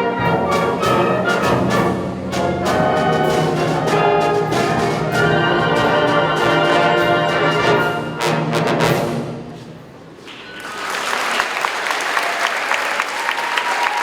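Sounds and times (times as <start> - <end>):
wind orchestra brass chord: 0.0 - 9.6
audience applause: 10.2 - 14.0.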